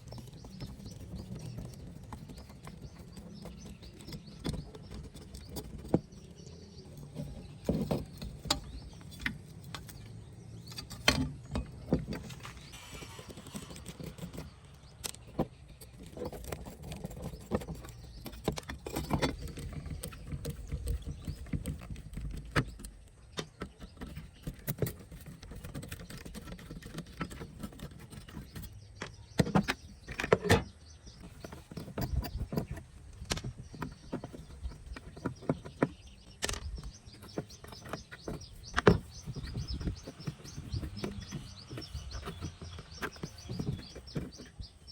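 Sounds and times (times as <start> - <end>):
irregular clicks and knocks: 13.5 - 44.9.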